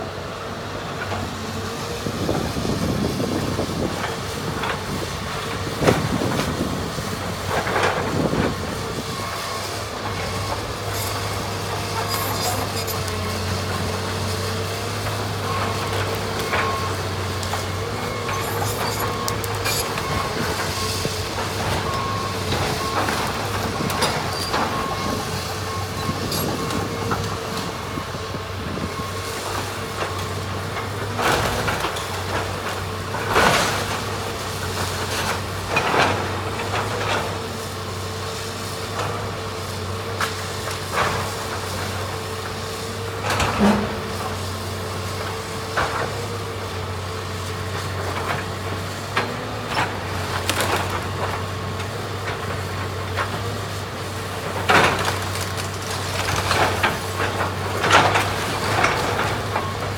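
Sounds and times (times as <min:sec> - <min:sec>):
heavy machine engine droning: 0:00.0 - 0:59.9
structure cracking and crashing: 0:54.5 - 0:59.9.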